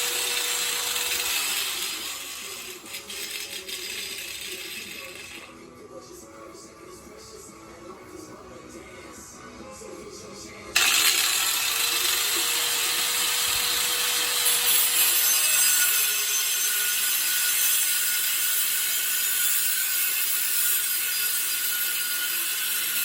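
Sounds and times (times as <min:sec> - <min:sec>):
angle grinder cutting steel: 0:00.0 - 0:05.5, 0:10.8 - 0:23.0.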